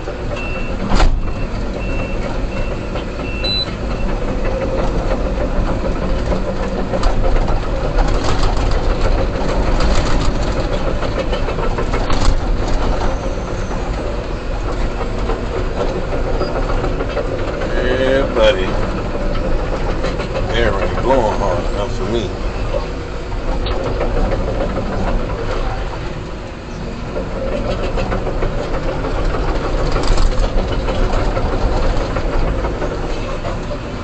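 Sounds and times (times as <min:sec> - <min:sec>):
excavator diesel engine running: 0:00.0 - 0:34.0
reversing alarm beeping: 0:00.3 - 0:04.3.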